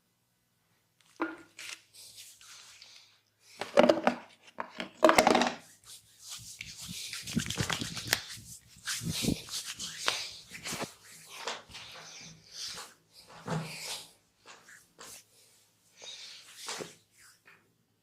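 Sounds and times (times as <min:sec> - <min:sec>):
hands rubbing skin and clothing: 0:01.0 - 0:03.1, 0:05.6 - 0:17.5.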